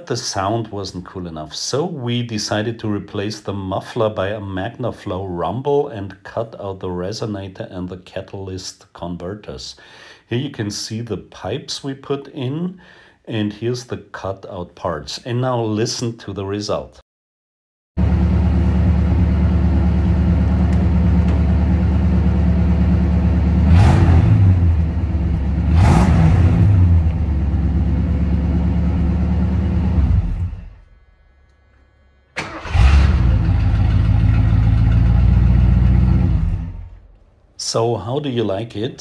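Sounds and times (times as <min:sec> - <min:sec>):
car exhaust idling and revving: 0:18.0 - 0:30.9, 0:33.1 - 0:37.0.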